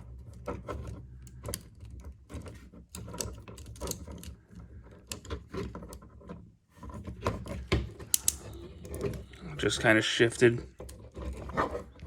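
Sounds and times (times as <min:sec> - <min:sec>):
plastic toy parts clicking: 0:00.1 - 0:06.1, 0:07.1 - 0:09.4.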